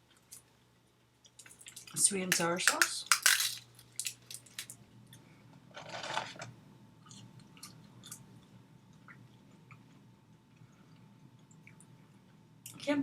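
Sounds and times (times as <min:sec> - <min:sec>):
person chewing and crunching food: 0:07.0 - 0:08.5.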